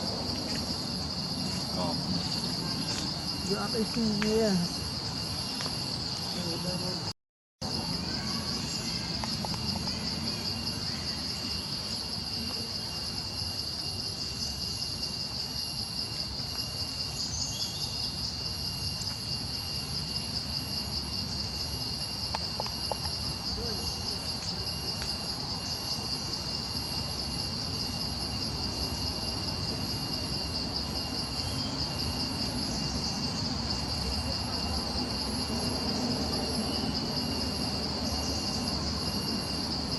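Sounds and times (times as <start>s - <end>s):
high-pitched insect chorus: 0.0s - 39.9s.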